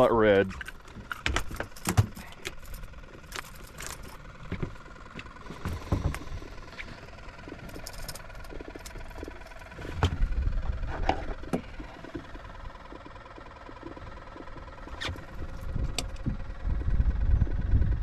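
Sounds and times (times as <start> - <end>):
wind rumbling on microphone: 9.7 - 11.6, 14.9 - 18.0.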